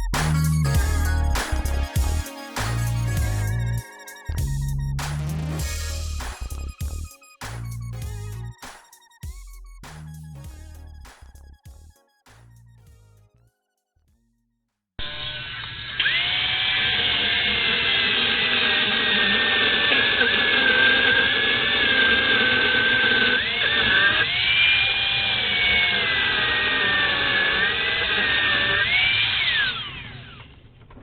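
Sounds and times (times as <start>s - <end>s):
power tool whining: 15.0s - 30.7s.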